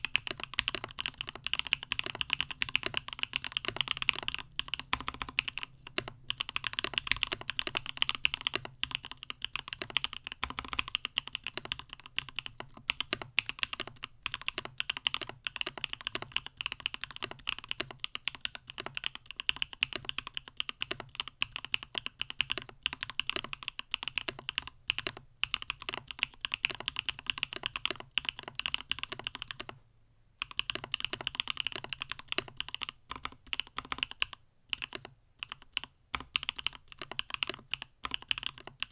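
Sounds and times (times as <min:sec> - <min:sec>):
mechanical keyboard typing: 0:00.0 - 0:29.8, 0:30.4 - 0:38.9.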